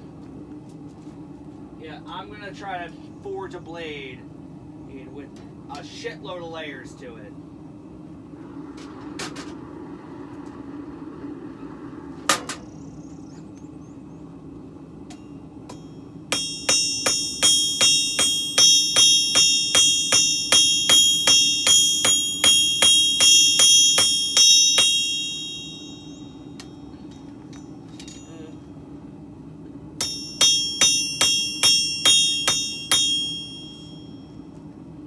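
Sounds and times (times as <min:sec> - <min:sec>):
steady low hum: 0:00.0 - 0:35.0
hammer striking steel on anvil: 0:12.3 - 0:12.7, 0:15.1 - 0:28.5, 0:30.0 - 0:34.2.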